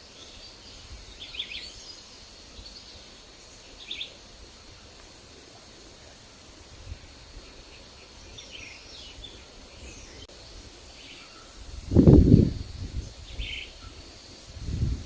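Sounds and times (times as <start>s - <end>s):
forest birds chirping: 0.0s - 15.0s
wind gust on microphone: 11.6s - 15.0s.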